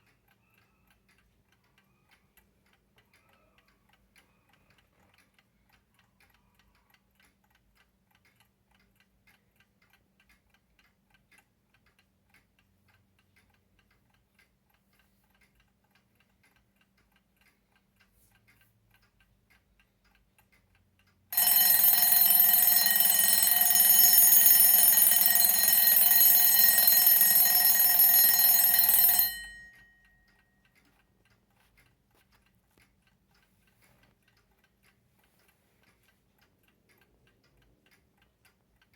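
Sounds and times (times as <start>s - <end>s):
alarm clock ticking: 21.2s - 31.5s
alarm bell ringing: 21.3s - 30.3s.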